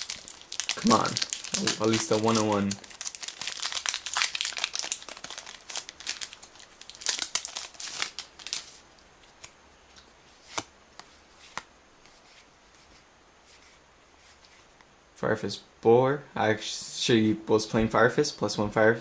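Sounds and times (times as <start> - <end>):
wrapper crinkling and tearing: 0.0 - 8.8.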